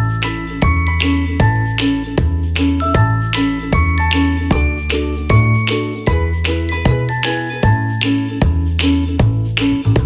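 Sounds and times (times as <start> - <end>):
chiming bell-like melody: 0.0 - 2.2, 2.8 - 8.4
sustained bass notes: 0.0 - 10.0.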